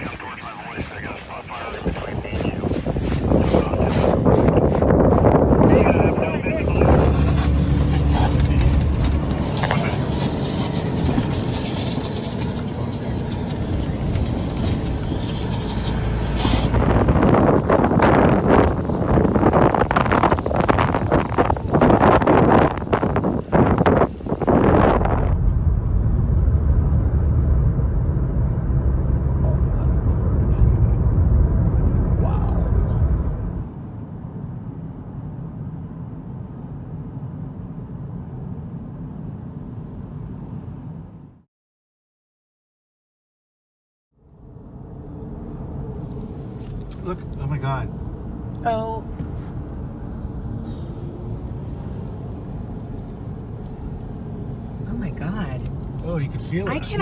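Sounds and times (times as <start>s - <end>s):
moving vehicle rumble: 0.0s - 41.4s, 44.2s - 57.0s
wind rushing on microphone: 0.0s - 41.4s, 44.5s - 57.0s.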